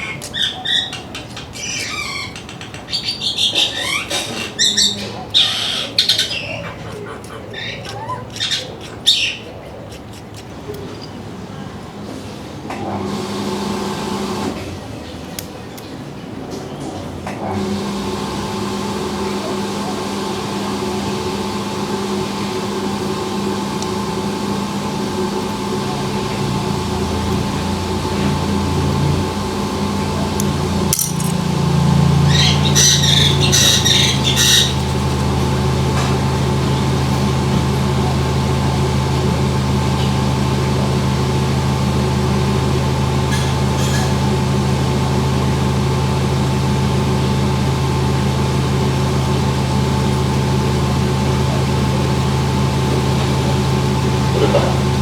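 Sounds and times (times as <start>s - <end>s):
electric grooming tool motor humming: 12.8s - 14.6s, 17.4s - 55.0s.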